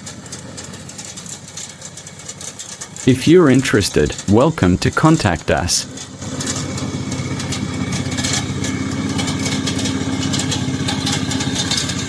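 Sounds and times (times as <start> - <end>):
mower engine running: 0.0 - 12.0.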